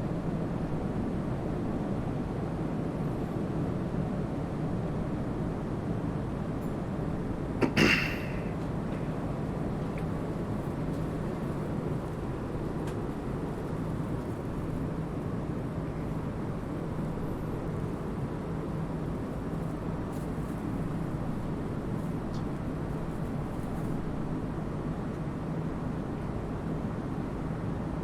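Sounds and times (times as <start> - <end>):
constant low hum: 0.0 - 27.4
jet engines droning: 7.5 - 10.3.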